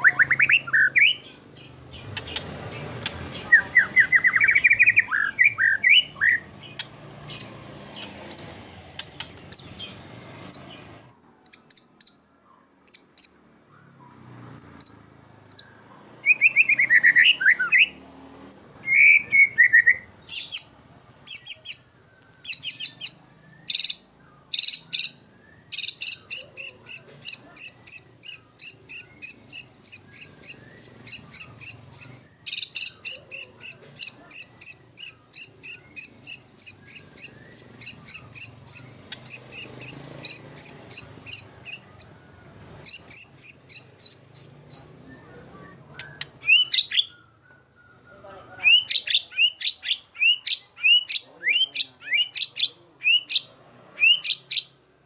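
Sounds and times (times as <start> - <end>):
bird singing trills and whistles: 0.0 - 18.0, 18.8 - 54.8.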